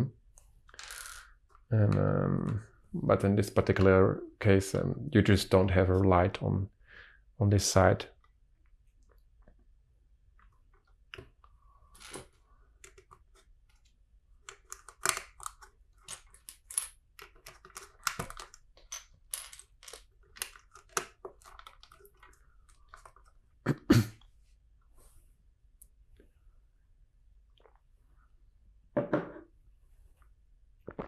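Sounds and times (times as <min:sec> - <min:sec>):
plastic bricks clicking and rattling: 0:00.7 - 0:01.3, 0:14.5 - 0:23.2.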